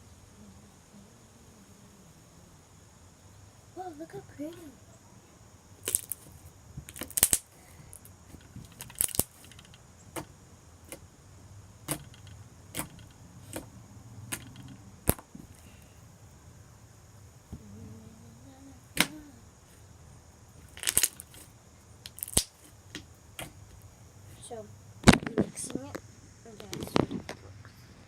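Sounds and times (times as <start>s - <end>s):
slime squishing: 5.8s - 11.0s, 22.1s - 24.6s.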